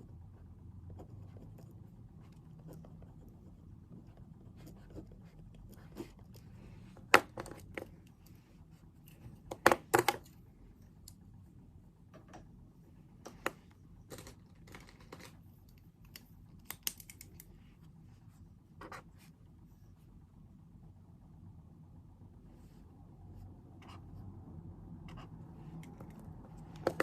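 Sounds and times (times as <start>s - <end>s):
clicks and taps of stationery: 25.8s - 27.0s.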